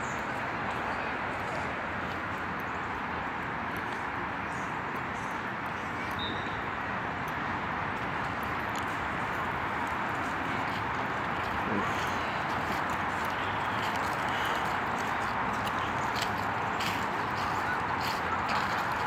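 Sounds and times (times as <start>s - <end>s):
road traffic noise: 0.0s - 19.0s.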